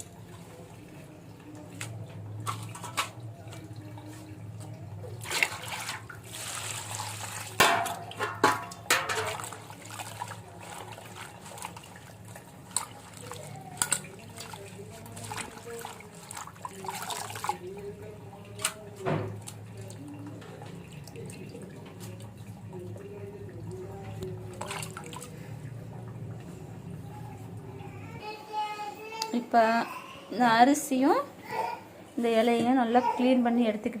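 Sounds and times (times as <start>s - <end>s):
water splashing and dripping: 0.0s - 27.6s.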